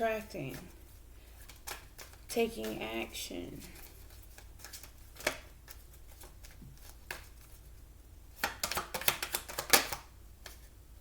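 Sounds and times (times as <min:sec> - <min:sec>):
cards shuffling: 0:00.4 - 0:10.7
card snaps: 0:08.4 - 0:10.6
crisp card clicks: 0:08.4 - 0:10.6.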